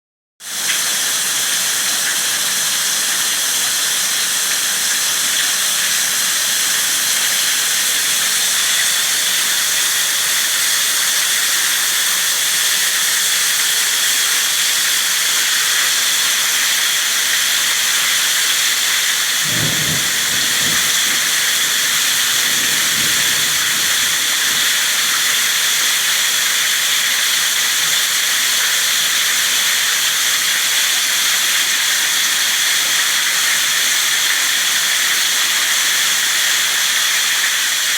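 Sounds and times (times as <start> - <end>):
heavy rain pouring: 1.1 - 36.4
low thunder rumble: 19.0 - 26.1.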